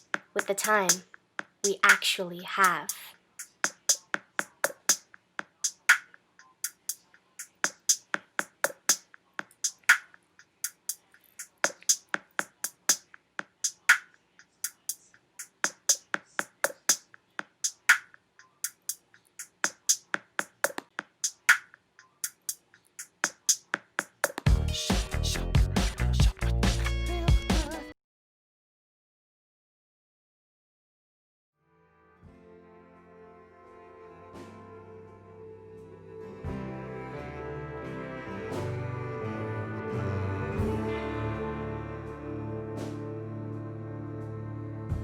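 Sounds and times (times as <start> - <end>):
sparse percussion beat: 0.0 - 27.8.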